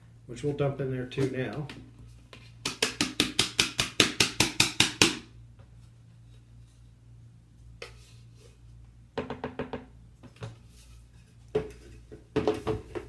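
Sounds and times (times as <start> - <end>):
blender jar knocking on bucket: 9.2 - 9.9.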